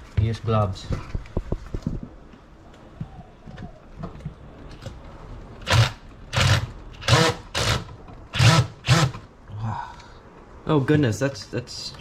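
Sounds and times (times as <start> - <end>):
cordless drill whirring: 5.7 - 9.2.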